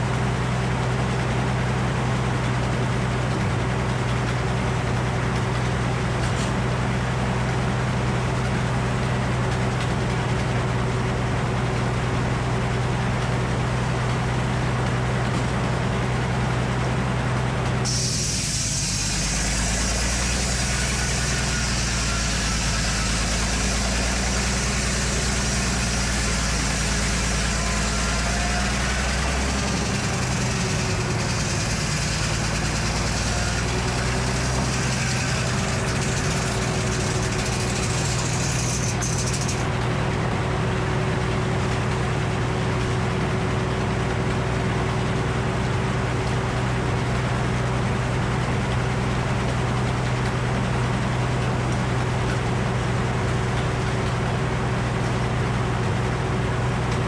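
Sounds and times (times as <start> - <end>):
sawmill engine hum: 0.0 - 57.0
high hiss: 17.9 - 39.4.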